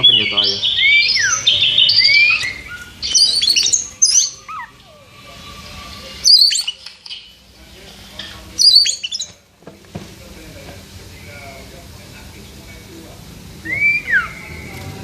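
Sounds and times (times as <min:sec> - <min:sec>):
bird singing high whistles: 0:00.0 - 0:04.8, 0:06.2 - 0:07.3, 0:08.6 - 0:09.4, 0:13.6 - 0:14.8
loud sharp bird calls: 0:00.0 - 0:07.5, 0:08.2 - 0:09.4, 0:13.6 - 0:15.0.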